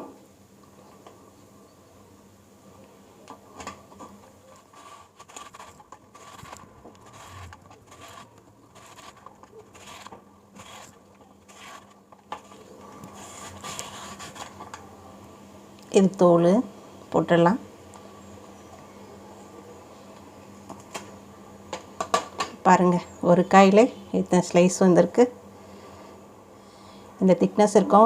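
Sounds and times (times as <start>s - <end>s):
hand slicer scraping strokes: 4.5s - 14.6s.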